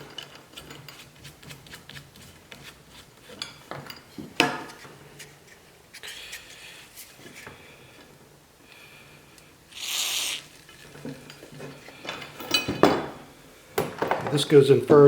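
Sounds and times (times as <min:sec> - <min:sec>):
aerosol can spraying: 0:09.7 - 0:10.5.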